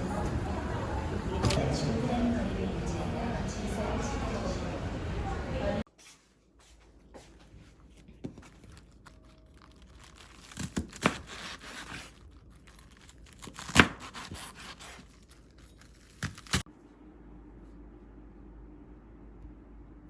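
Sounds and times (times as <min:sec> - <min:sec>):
wrapping material crinkling and tearing: 0:07.8 - 0:16.7.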